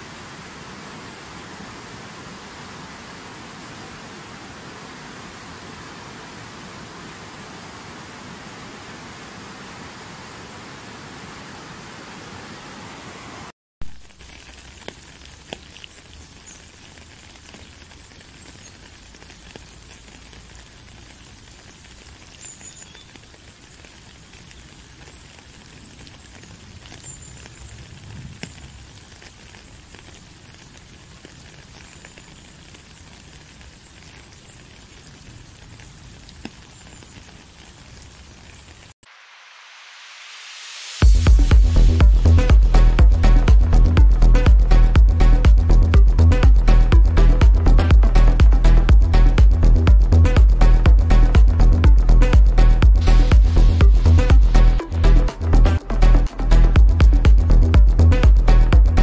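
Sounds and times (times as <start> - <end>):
rushing water: 0.0 - 59.0
water ticks and drips: 13.8 - 39.0, 41.0 - 59.0.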